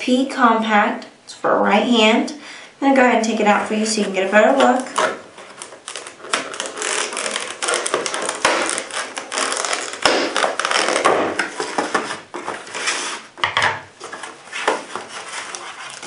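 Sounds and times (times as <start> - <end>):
packaging rustling: 4.5 - 16.0.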